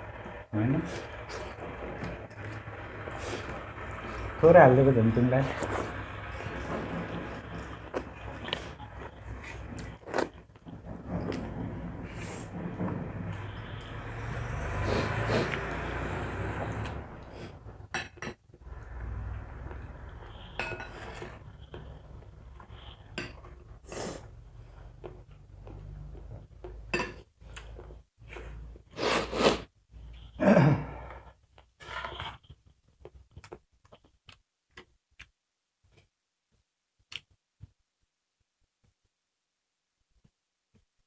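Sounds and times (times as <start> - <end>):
dishes and cutlery clinking: 20.5 - 21.3, 26.9 - 27.3.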